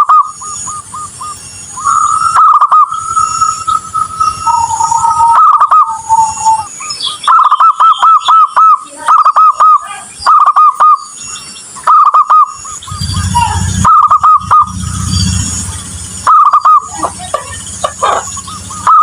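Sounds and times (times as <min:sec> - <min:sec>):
low hum: 0:00.0 - 0:06.8, 0:11.1 - 0:19.0
dove cooing: 0:00.0 - 0:11.0, 0:11.8 - 0:19.0
faint high-pitched tone: 0:12.4 - 0:17.8.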